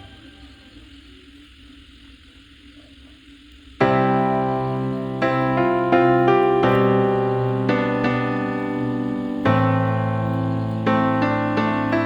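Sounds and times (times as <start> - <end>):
piano chord ringing: 3.8 - 12.0.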